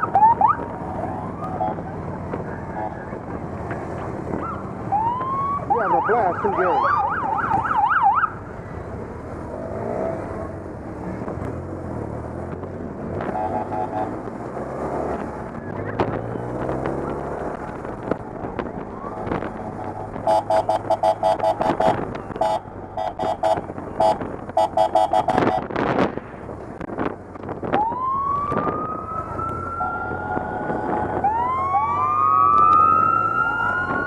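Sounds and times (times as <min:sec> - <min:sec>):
police siren yelping: 0:00.0 - 0:01.9, 0:04.4 - 0:08.4, 0:18.8 - 0:19.5, 0:20.2 - 0:25.6, 0:27.8 - 0:34.0
motorcycle engines revving: 0:00.0 - 0:34.0
short electronic horn blasts: 0:20.2 - 0:25.6.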